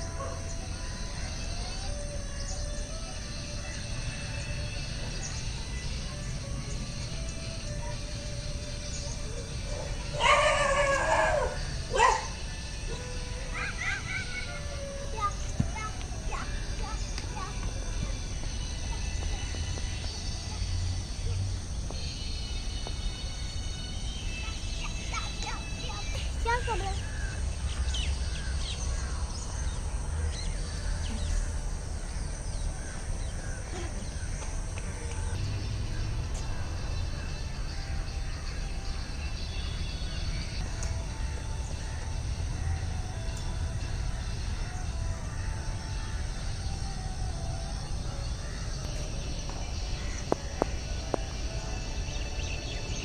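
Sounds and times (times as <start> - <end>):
birds chirping: 0.0 - 53.0
steady low rumble: 15.4 - 53.0.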